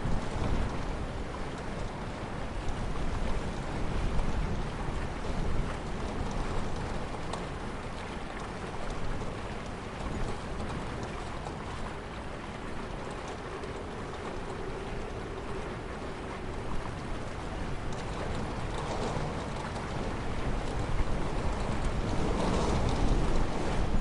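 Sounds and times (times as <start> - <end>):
river water rushing: 6.6 - 24.0.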